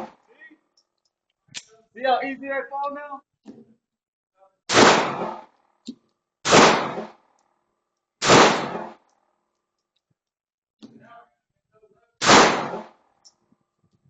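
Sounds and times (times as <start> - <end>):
airsoft gun shots: 4.7 - 5.5, 6.4 - 7.2, 8.2 - 9.0, 12.2 - 13.0.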